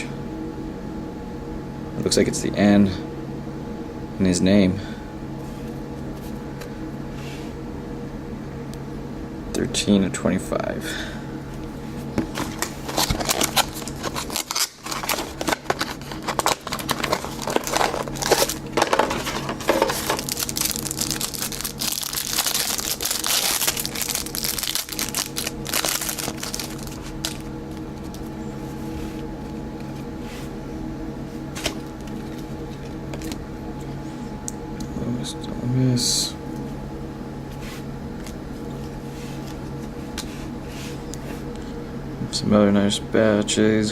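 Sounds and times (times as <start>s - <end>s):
steady low hum: 0.0s - 43.9s
card wrappers crinkling and tearing: 12.2s - 28.4s, 31.5s - 33.4s.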